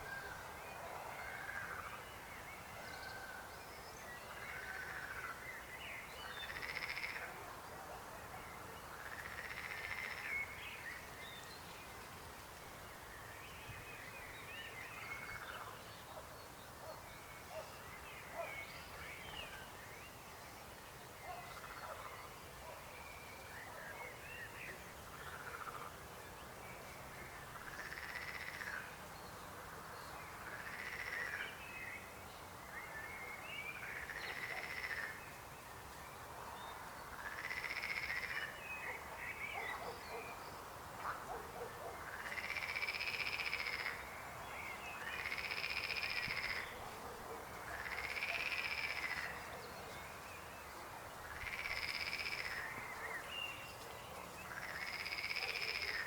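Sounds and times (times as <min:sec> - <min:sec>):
frogs croaking: 0:04.3 - 0:05.4, 0:06.3 - 0:07.4, 0:08.9 - 0:10.6, 0:25.1 - 0:26.0, 0:27.3 - 0:29.0, 0:30.3 - 0:31.6, 0:33.8 - 0:35.2, 0:36.8 - 0:40.1, 0:41.0 - 0:44.3, 0:45.0 - 0:46.8, 0:47.6 - 0:49.6, 0:51.2 - 0:53.2, 0:54.5 - 0:56.0.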